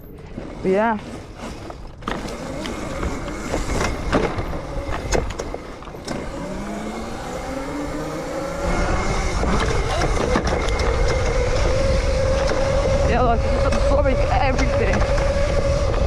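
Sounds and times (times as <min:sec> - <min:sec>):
wind and tyre rumble: 0:00.0 - 0:16.0
electric motor whine rising: 0:00.4 - 0:16.0
knocks and rattles over bumps: 0:08.7 - 0:16.0.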